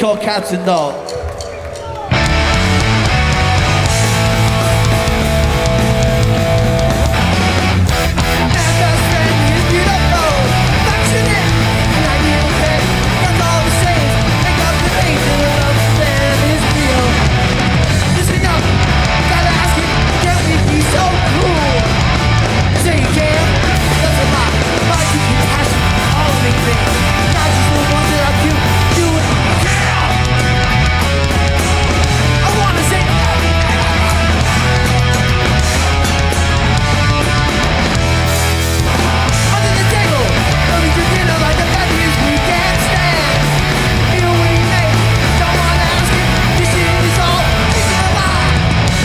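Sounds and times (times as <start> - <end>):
live punk band playing: 0.0 - 49.0.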